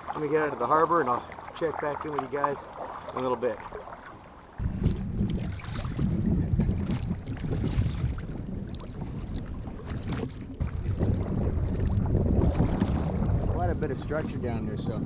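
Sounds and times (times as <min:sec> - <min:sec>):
water splashing against kayak: 0:00.0 - 0:15.0
wind buffeting microphone: 0:04.6 - 0:15.0.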